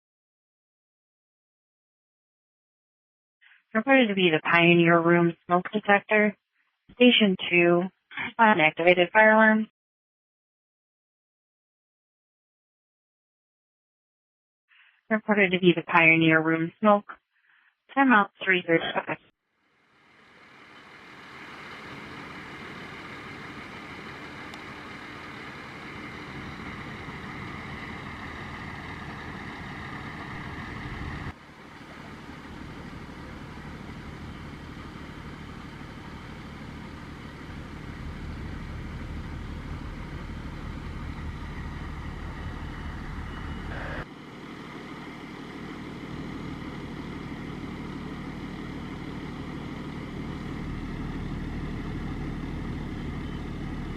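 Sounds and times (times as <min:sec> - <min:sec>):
fire engine motor running: 0:19.8 - 0:53.9.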